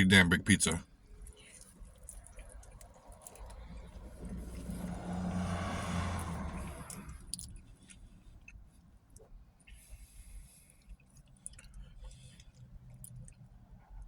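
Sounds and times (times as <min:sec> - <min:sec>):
car passing by: 0:02.9 - 0:07.6.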